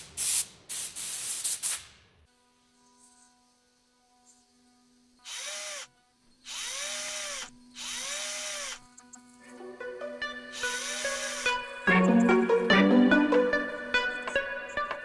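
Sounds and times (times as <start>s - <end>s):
cordless drill driving screws: 5.2s - 8.8s, 10.6s - 11.5s.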